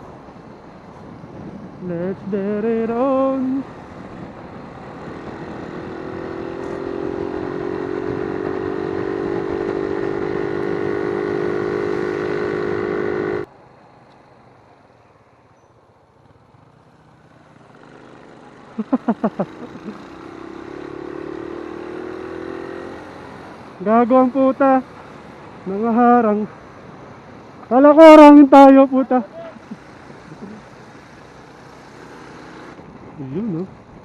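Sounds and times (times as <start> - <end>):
motorcycle engine running: 2.9 - 13.5, 16.1 - 26.3, 28.9 - 34.0.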